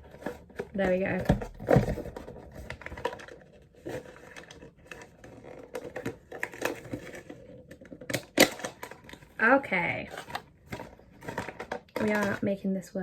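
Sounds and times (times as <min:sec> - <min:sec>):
cardboard box being opened: 0:00.0 - 0:09.2.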